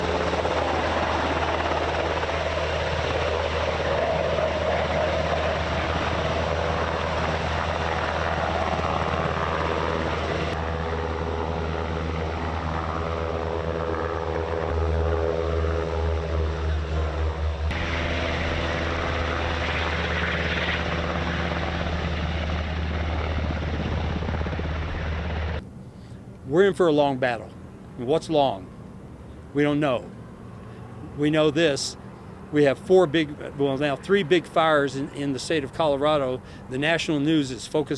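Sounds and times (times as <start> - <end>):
helicopter rotor and engine drone: 0.0 - 37.9.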